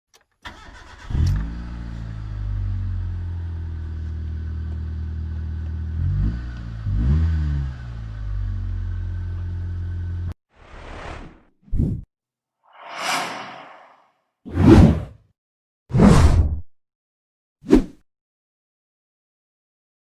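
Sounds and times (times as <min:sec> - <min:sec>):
car starter cranking: 0:00.4 - 0:01.5
car engine idling and revving: 0:00.6 - 0:10.4.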